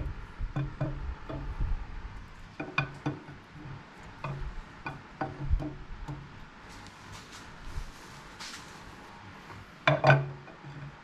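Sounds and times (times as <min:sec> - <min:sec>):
metallic clicks and knocks: 0:00.0 - 0:01.7, 0:02.5 - 0:06.4, 0:09.8 - 0:11.0.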